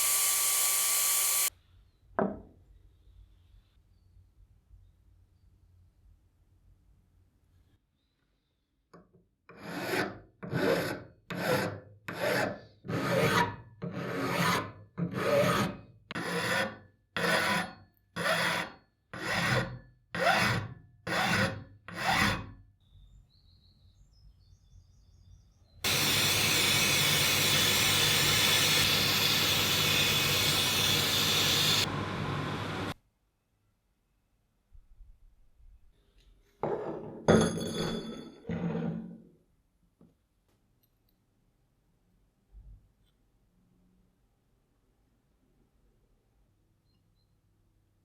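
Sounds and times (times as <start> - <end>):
hand file rasping: 9.5 - 22.5, 25.9 - 31.9
loud steady machine noise: 25.9 - 32.9.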